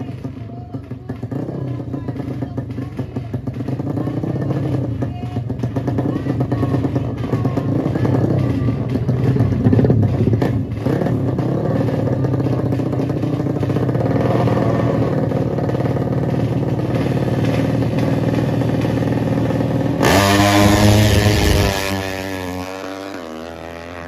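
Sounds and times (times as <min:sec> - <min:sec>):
motorcycle engines revving: 0:00.0 - 0:24.0
louder engine rising in pitch: 0:14.0 - 0:24.0.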